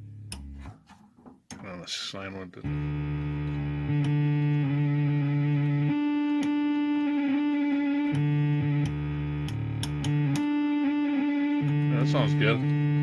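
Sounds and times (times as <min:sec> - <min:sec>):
synthesizer held tone: 0:02.7 - 0:13.0
switch clicks: 0:08.1 - 0:10.5.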